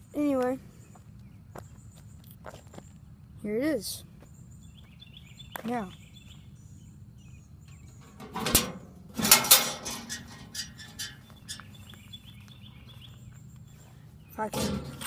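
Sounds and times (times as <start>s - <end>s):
small birds chirping: 0.0s - 9.1s, 9.9s - 15.0s
mailbox clunk: 8.0s - 11.2s, 14.4s - 15.0s.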